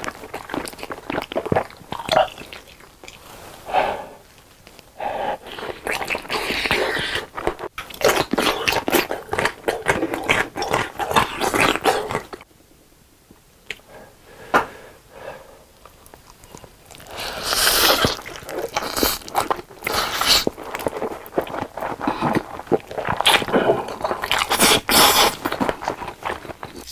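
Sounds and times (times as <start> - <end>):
crunchy chewing: 0.0 - 3.3, 4.2 - 12.5, 15.8 - 26.9.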